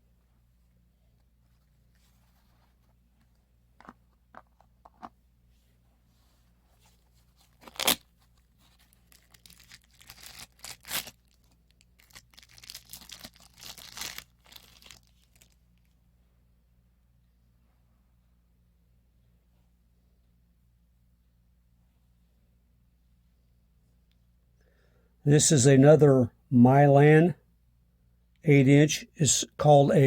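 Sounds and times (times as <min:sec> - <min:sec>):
wrapping crinkling and rustling: 0:06.8 - 0:16.0
packaging ripping: 0:07.6 - 0:08.1, 0:08.8 - 0:15.6.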